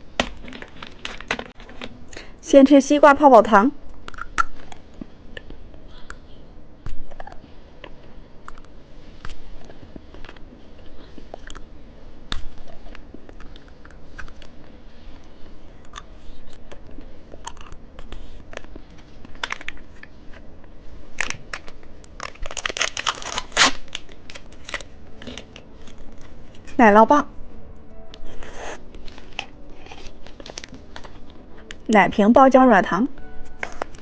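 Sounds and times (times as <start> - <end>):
chewing gum: 15.8 - 18.8
candy wrapper crinkling: 21.1 - 26.8.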